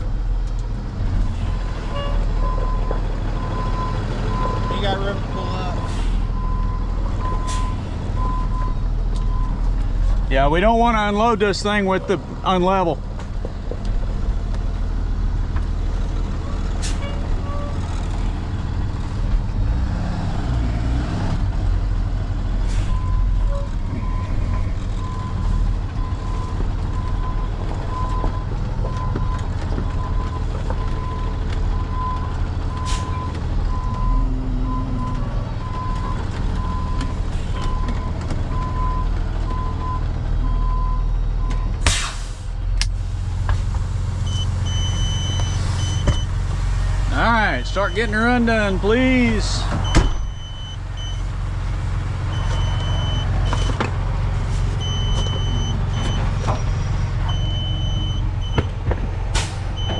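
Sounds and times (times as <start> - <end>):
diesel truck engine running: 0.0 - 59.9
backup alarm beeping: 44.2 - 46.3, 47.1 - 51.3, 52.3 - 53.8, 54.8 - 58.7.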